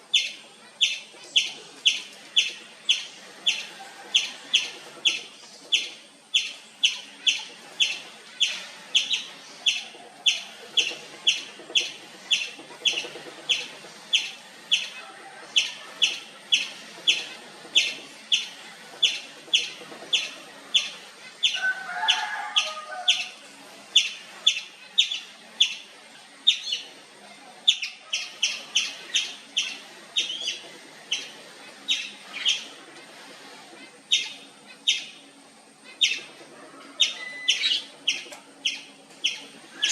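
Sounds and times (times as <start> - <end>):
squirrel chirping: 0.1 - 21.6, 27.6 - 32.8, 34.1 - 35.3, 37.0 - 39.9.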